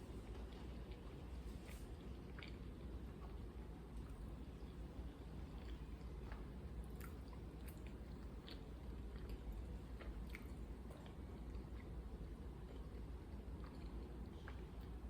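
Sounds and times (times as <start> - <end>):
person chewing food: 0.3 - 3.4, 5.5 - 15.0.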